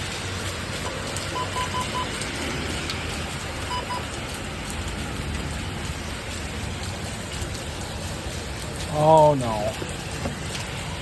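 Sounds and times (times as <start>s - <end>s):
heavy rain falling: 0.0s - 11.0s
short beeps: 1.4s - 2.1s, 3.7s - 4.0s.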